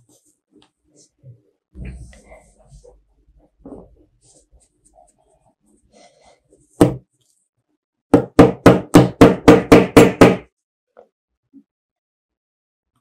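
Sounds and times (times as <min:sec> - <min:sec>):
knocks on a hard surface: 0:06.8 - 0:07.0, 0:08.2 - 0:10.4.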